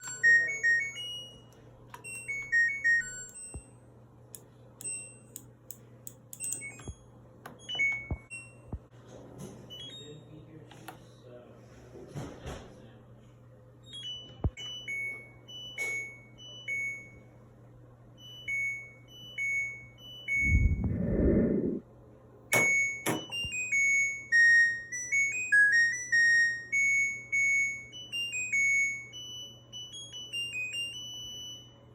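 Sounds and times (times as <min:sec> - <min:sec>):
electronic beeps: 0:20.3 - 0:21.8
low rumbling whoosh: 0:20.4 - 0:21.8.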